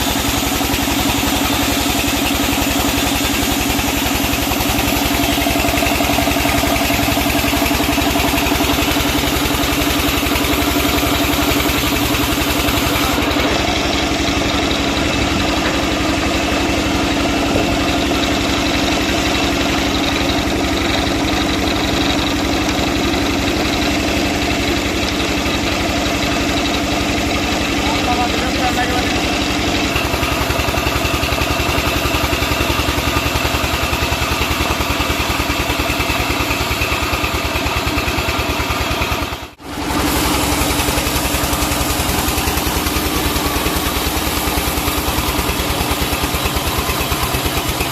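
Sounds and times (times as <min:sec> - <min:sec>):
sawmill machinery running: 0:00.0 - 0:47.9.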